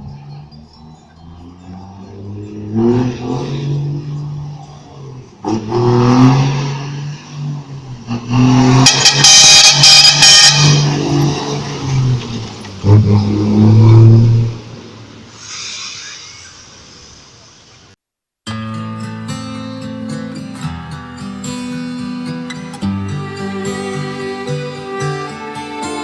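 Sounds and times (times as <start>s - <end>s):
diesel truck engine revving: 0.0s - 16.6s.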